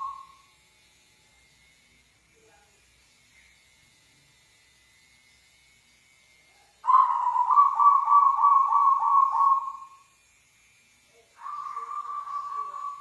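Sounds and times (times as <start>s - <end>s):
dove cooing: 0.0s - 0.4s, 6.9s - 10.0s, 11.4s - 13.0s.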